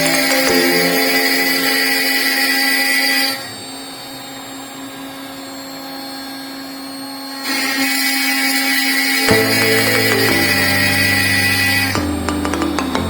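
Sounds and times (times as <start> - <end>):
router spindle whine: 1.1 - 9.3.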